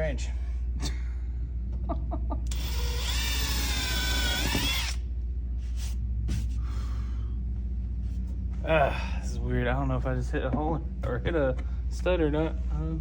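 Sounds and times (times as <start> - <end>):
power drill boring into wall: 2.5 - 5.0.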